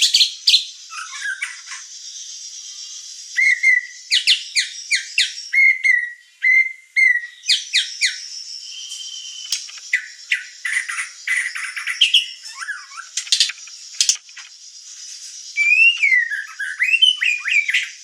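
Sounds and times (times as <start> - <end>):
bird singing whistled song: 0.0 - 18.0.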